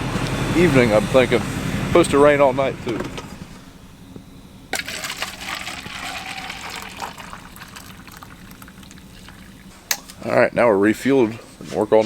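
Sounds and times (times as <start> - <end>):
fuel pouring into a tank: 4.8 - 9.7.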